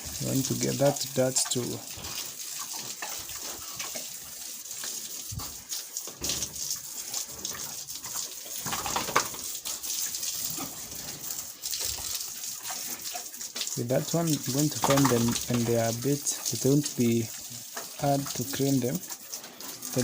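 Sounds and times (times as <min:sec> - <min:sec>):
hose water splashing on concrete: 0:00.0 - 0:20.0.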